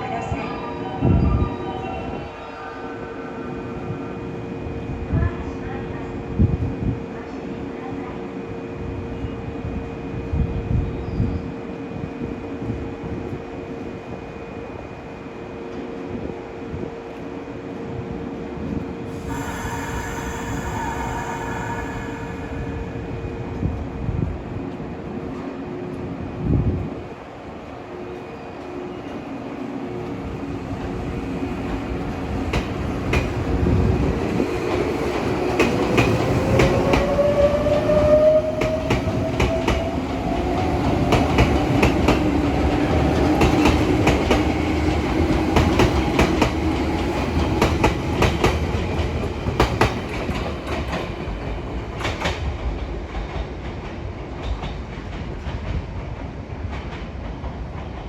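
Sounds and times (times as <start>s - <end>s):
train rumble: 15.8s - 58.0s.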